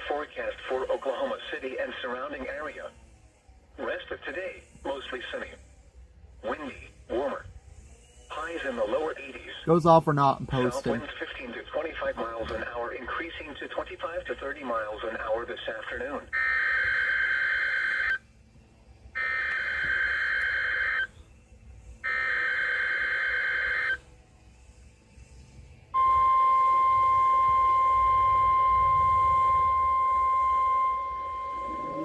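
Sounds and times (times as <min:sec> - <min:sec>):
steady high alert tone: 0:26.0 - 0:32.0
warbling data tones: 0:26.0 - 0:32.0.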